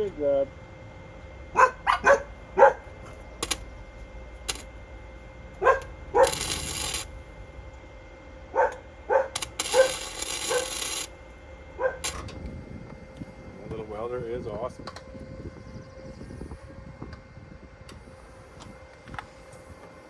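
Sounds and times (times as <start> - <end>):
dog barking: 1.5 - 3.2, 5.6 - 6.6, 8.5 - 10.8, 11.8 - 12.2
hissing crackle: 6.2 - 7.1, 9.2 - 11.1.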